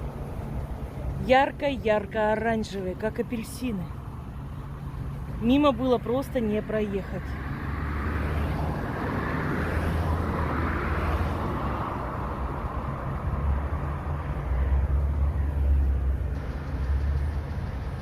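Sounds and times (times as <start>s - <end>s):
car engine and road noise: 0.0s - 18.0s
rushing sound: 7.4s - 18.0s.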